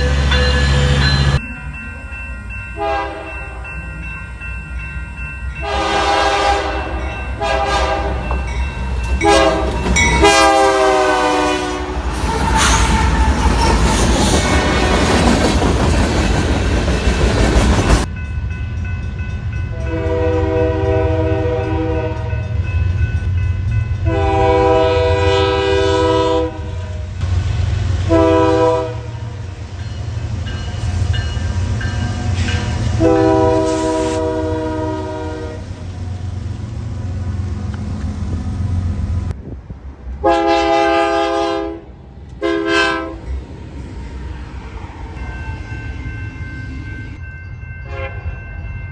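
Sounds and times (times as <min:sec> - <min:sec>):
train wheels clicking and rumbling: 0:00.0 - 0:25.8, 0:26.5 - 0:40.9
locomotive horn blasts: 0:02.8 - 0:03.6, 0:05.6 - 0:08.3, 0:09.2 - 0:14.9, 0:19.7 - 0:22.6, 0:24.0 - 0:27.2, 0:28.0 - 0:29.4, 0:32.4 - 0:35.9, 0:40.2 - 0:43.2, 0:47.8 - 0:48.4.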